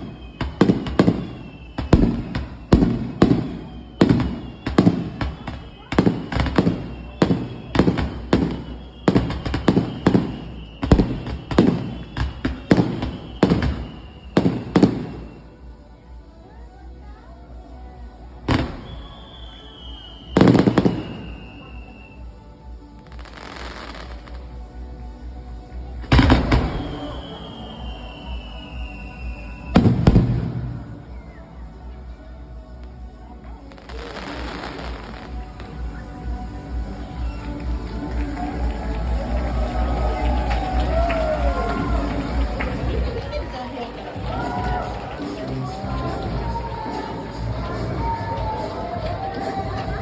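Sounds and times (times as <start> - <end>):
fireworks bangs echoing: 0.0 - 15.4, 18.5 - 22.0, 26.1 - 31.1
faint music: 0.0 - 50.0.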